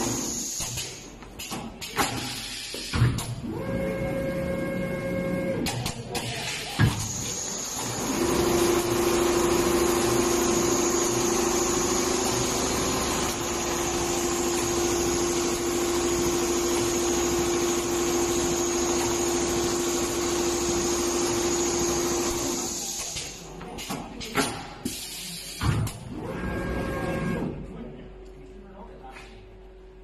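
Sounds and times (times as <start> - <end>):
sewing machine humming: 0.0 - 0.5, 7.2 - 23.0.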